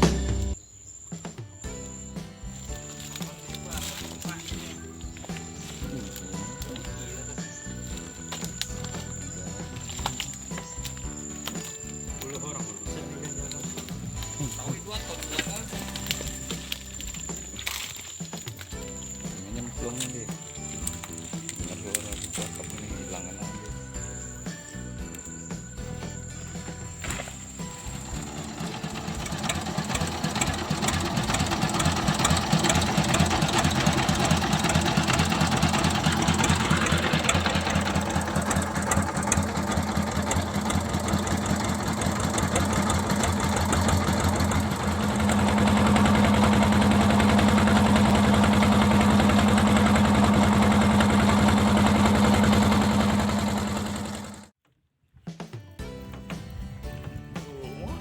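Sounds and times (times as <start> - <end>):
boat engine knocking: 27.5 - 54.5.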